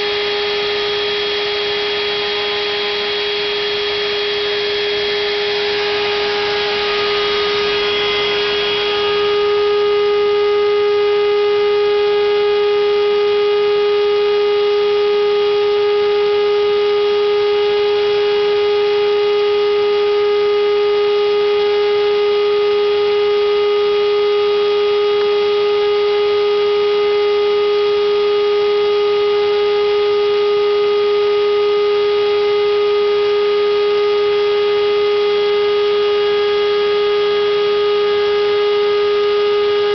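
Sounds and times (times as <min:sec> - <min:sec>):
router motor whining: 0:00.0 - 0:09.9.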